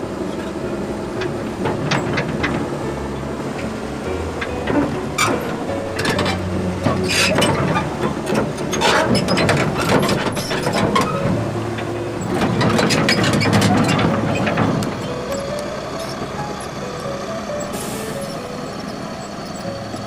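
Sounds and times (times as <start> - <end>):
heavy diesel engine running: 0.0 - 20.0
sharp metallic clanks and rattles: 4.4 - 16.8.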